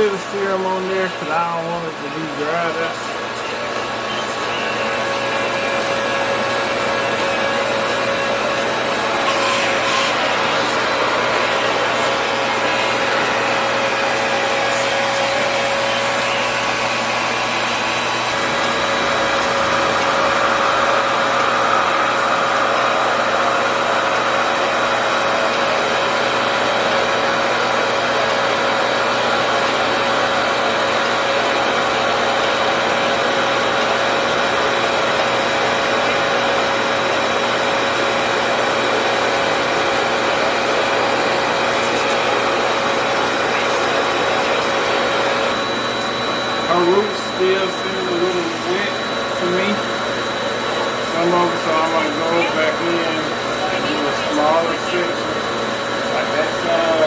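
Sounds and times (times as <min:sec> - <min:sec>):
hair dryer rushing air: 0:00.0 - 0:04.0, 0:04.9 - 0:57.0
motor whine: 0:00.0 - 0:57.0.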